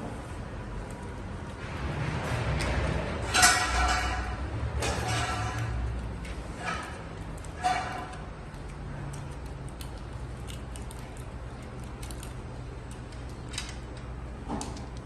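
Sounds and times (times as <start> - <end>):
tools clicking: 5.5 - 15.0.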